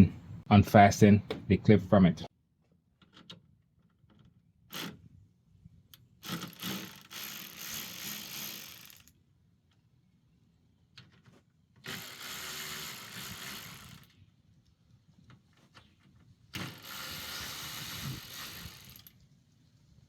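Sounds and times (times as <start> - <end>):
ratchet wrench clicking rapidly: 6.2 - 9.1, 11.9 - 14.1, 16.6 - 19.2.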